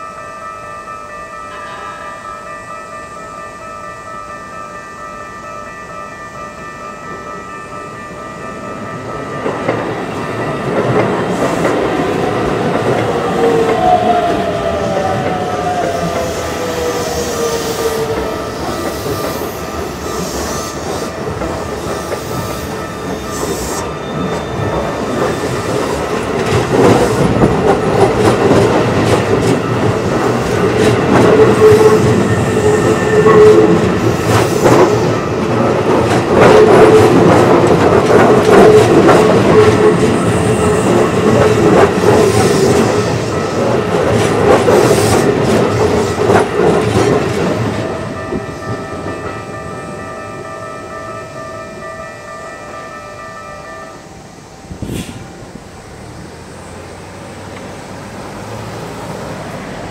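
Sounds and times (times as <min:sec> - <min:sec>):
crossing warning signal ringing: 0:00.0 - 0:56.5
train wheels clattering over rails: 0:09.0 - 0:50.5.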